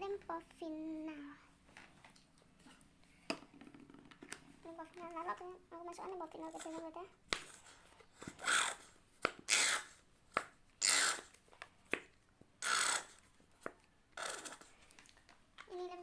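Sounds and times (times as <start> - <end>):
squeeze bottle air spurts: 10.8 - 11.3, 12.6 - 13.2.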